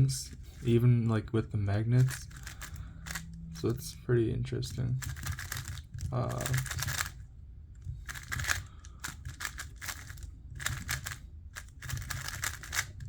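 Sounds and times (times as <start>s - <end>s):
puzzle cube clicking: 2.0s - 3.3s, 5.0s - 7.2s, 8.0s - 13.0s.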